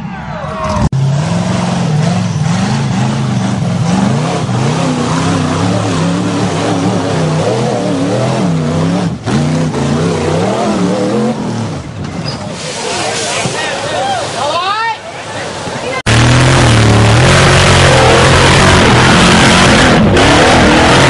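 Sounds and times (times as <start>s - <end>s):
engine revving up and down: 0.6s - 11.9s, 16.1s - 21.0s.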